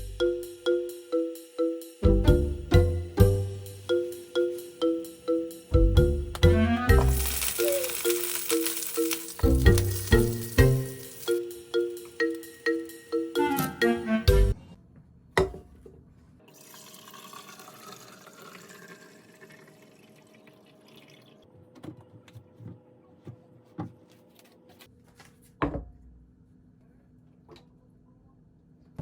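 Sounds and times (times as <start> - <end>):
water running from tap: 7.0 - 11.4, 16.6 - 21.4
kitchenware clinking: 7.0 - 13.0.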